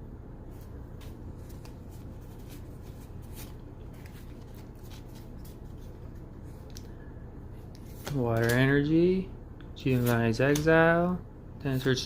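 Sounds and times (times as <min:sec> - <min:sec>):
cards clicking and sliding: 0:07.7 - 0:08.7, 0:09.9 - 0:10.8.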